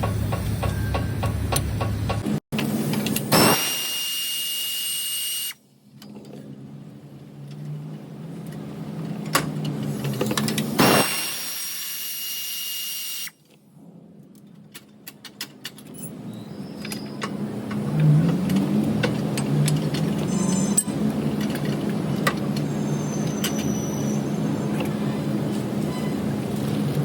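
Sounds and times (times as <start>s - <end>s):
sharp clicks and rattles: 16.8s - 22.7s.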